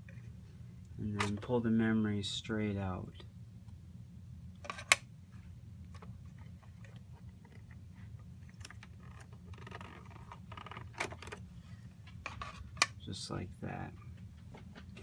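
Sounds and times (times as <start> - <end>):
steady low hum: 0.0 - 15.0
plastic scraping: 5.9 - 11.4, 12.2 - 12.9.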